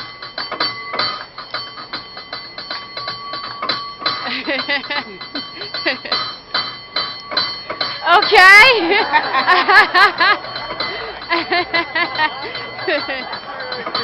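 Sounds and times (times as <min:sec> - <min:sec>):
cable car bell ringing fast: 0:00.0 - 0:14.0
people's voices: 0:08.0 - 0:14.0.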